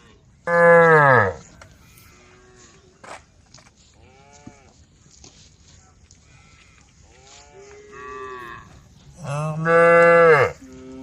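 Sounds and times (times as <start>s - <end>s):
cow mooing: 6.5s - 11.0s.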